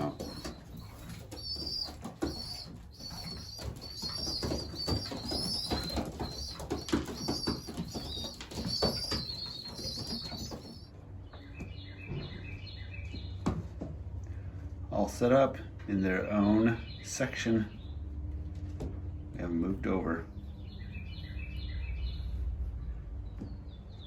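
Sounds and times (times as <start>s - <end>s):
wings flapping: 0.0s - 10.9s
birds scuffling: 0.0s - 15.2s
young pigeons peeping: 0.0s - 24.0s.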